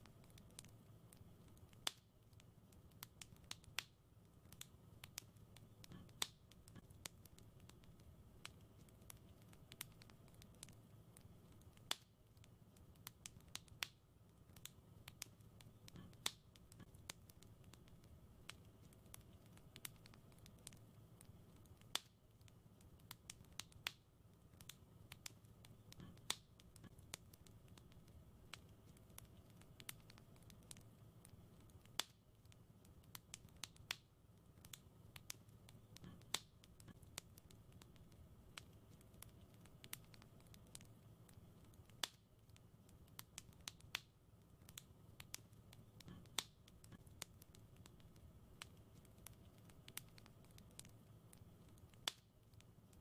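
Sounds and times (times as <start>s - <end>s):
wood fire crackling: 0.0s - 53.0s.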